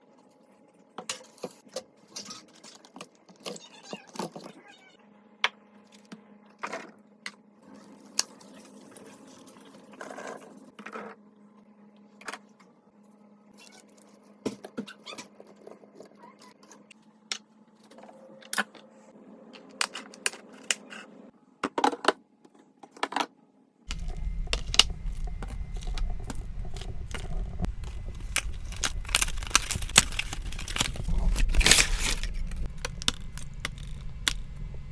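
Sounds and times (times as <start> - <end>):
faint steady hum: 23.9 - 34.9
low rumble: 23.9 - 34.9.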